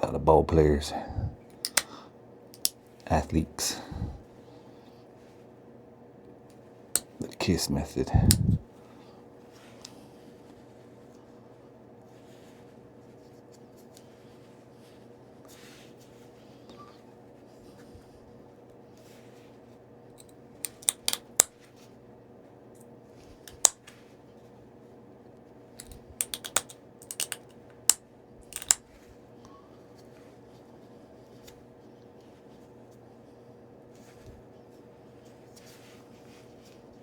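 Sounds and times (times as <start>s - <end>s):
stone flakes snapping off: 25.8s - 28.8s.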